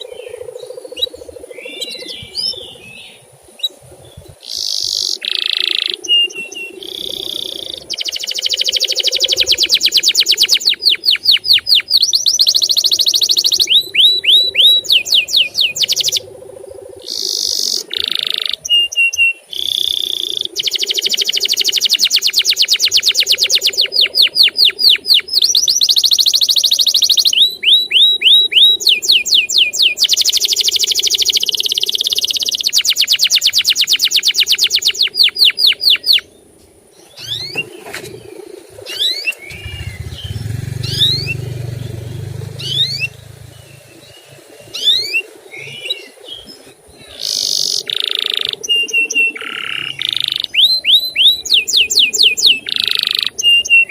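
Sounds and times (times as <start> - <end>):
canary singing trills: 0.0 - 53.9
sharp falling chirps: 38.9 - 43.6.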